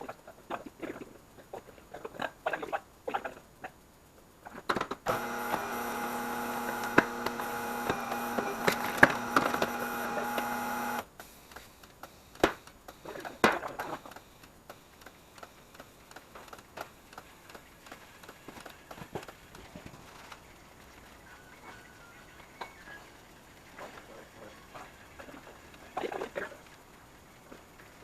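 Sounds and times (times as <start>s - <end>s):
turntable motor whirring: 5.1s - 11.1s.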